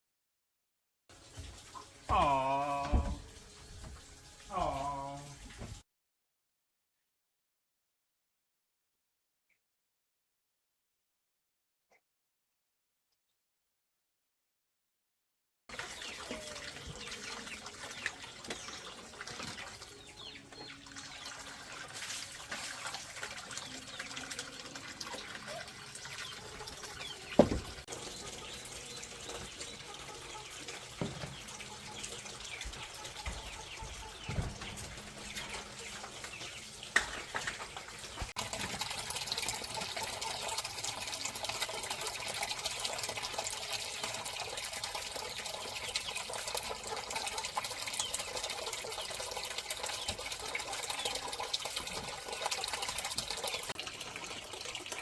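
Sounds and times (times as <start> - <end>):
water running and splashing: 1.1 - 5.8, 15.7 - 55.0
chickens clucking: 26.2 - 40.8.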